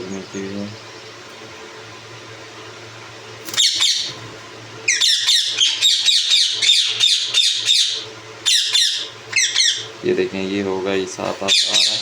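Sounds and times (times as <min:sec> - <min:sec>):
steady low hum: 0:00.0 - 0:12.0
parakeet squawking: 0:03.5 - 0:04.2, 0:04.9 - 0:09.9, 0:11.4 - 0:12.0.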